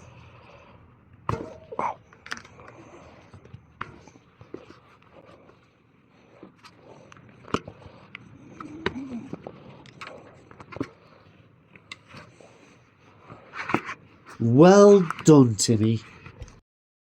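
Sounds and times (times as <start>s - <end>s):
bicycle tyre scraping off rim: 12.0s - 14.4s.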